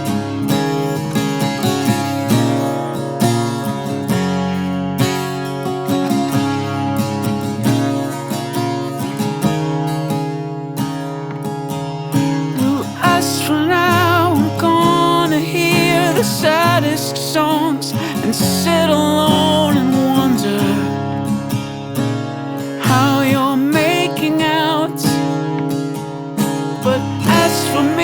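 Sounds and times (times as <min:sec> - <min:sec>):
acoustic guitar strumming: 0:00.0 - 0:28.0
person singing: 0:12.6 - 0:21.0, 0:22.8 - 0:25.4, 0:26.8 - 0:28.0.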